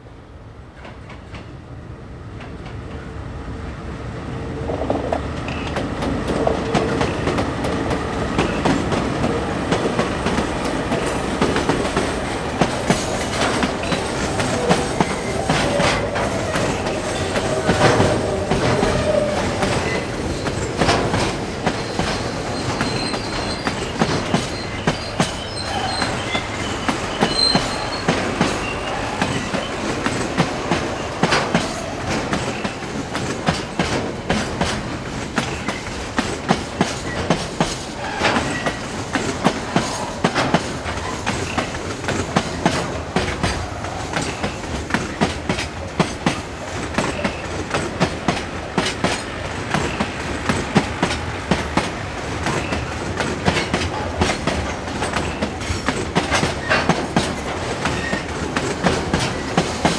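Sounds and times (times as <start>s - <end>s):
train wheels clacking: 4.6s - 59.9s
faint wheel squeal: 12.9s - 32.8s, 37.0s - 44.6s, 52.4s - 59.9s.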